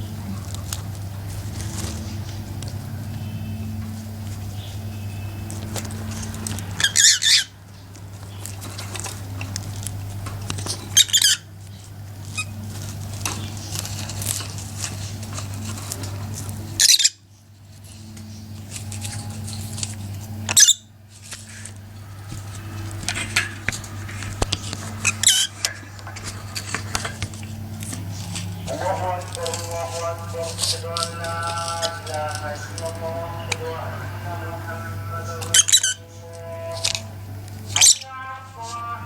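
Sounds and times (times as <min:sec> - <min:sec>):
low electrical hum: 0:00.0 - 0:39.0
small parrots chattering: 0:00.0 - 0:39.0
shrill parrot squawks: 0:06.8 - 0:07.6, 0:11.0 - 0:11.5, 0:16.8 - 0:17.2, 0:20.5 - 0:20.9, 0:25.0 - 0:25.6, 0:35.5 - 0:36.1, 0:37.8 - 0:38.1.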